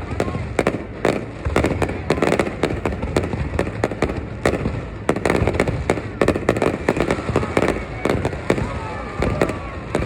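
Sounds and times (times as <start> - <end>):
fireworks bangs: 0.0 - 10.0.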